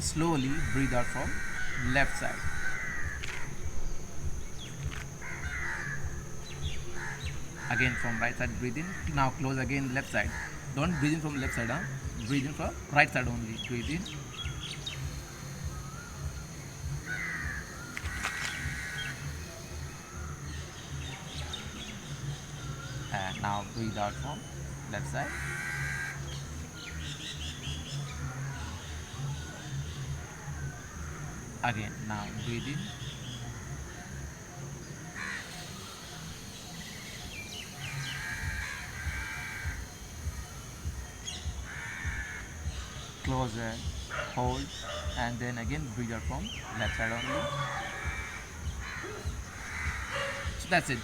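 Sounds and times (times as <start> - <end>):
birds chirping: 0.0 - 51.0
crow cawing: 0.2 - 22.0, 22.6 - 27.4, 35.0 - 36.0, 37.8 - 51.0.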